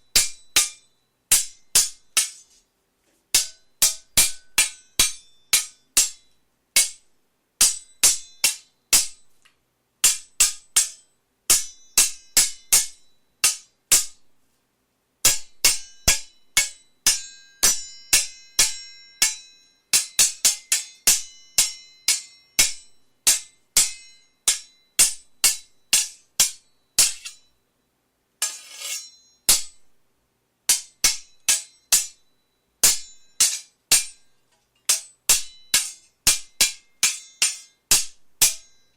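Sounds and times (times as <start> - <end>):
metal sword blades clashing: 0.2 - 2.5, 7.6 - 9.2, 10.0 - 14.1, 15.6 - 27.5, 28.4 - 29.8, 30.7 - 32.2, 32.8 - 34.2, 34.8 - 38.8
grinding blade scrape: 28.4 - 29.3.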